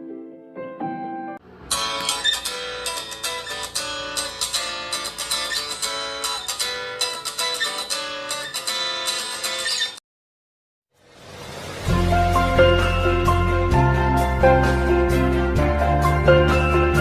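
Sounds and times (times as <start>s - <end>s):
phone ringtone plucked melody: 1.7s - 9.9s.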